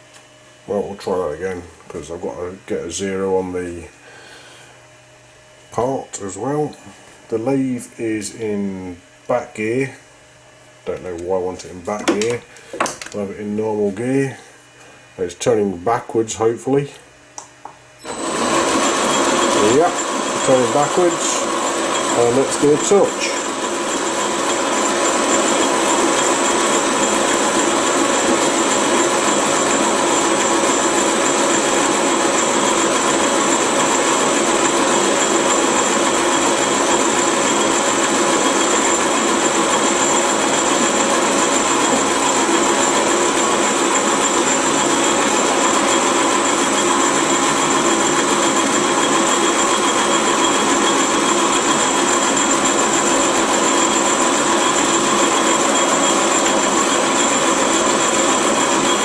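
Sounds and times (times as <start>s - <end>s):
metal lathe humming and whining: 18.0s - 59.0s.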